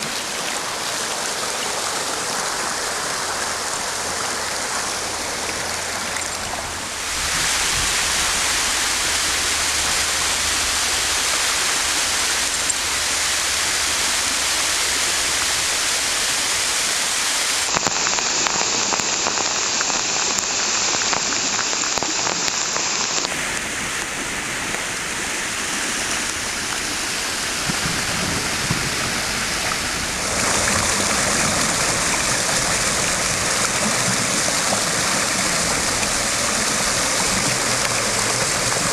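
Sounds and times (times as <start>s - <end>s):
heavy rain: 0.0s - 38.9s
brook rushing: 26.3s - 38.9s.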